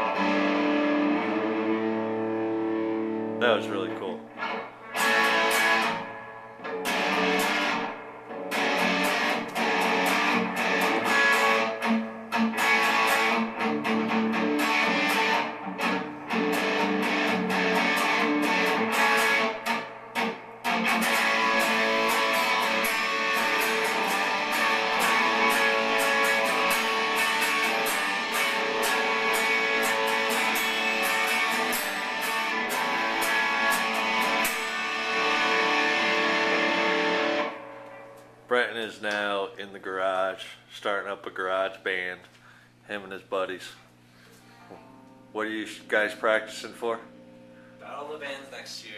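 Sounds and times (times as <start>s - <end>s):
guitar strumming: 0.0s - 40.3s, 44.0s - 48.4s.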